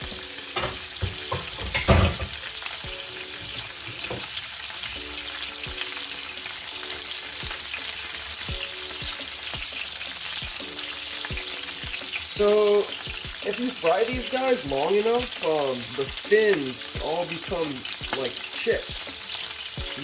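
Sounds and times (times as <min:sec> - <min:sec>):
fish frying in hot oil: 0:00.0 - 0:20.0.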